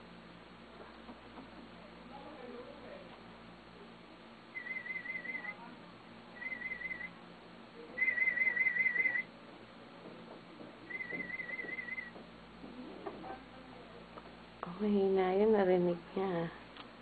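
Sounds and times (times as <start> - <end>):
high warble test tone: 4.5 - 5.6, 6.4 - 7.2.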